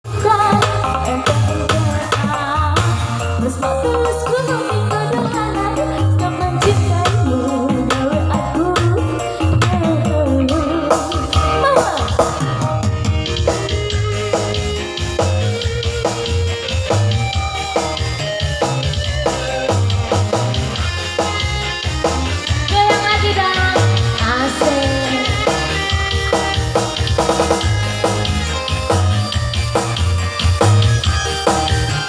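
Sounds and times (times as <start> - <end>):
band music with drums: 0.0 - 32.0.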